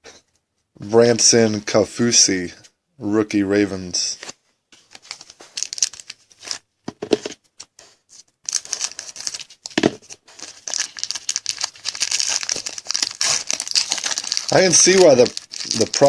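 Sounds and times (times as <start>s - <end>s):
foil wrapper crinkling and tearing: 4.9s - 6.6s, 8.4s - 16.0s.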